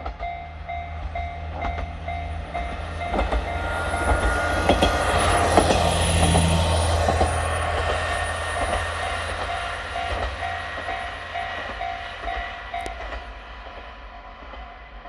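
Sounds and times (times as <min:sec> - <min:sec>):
wheels clicking over rail joints: 0:00.0 - 0:13.4
crossing warning bell ringing: 0:00.0 - 0:15.0
diesel railcar engine rumble: 0:00.0 - 0:15.0.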